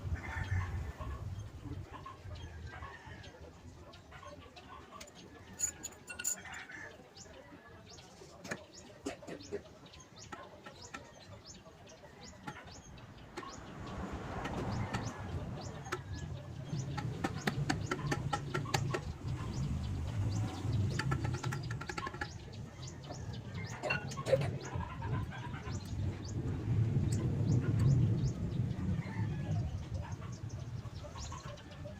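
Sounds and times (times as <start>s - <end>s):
birds clucking: 0.0s - 31.9s
sharp clicks and knocks: 16.8s - 19.3s, 20.8s - 22.4s.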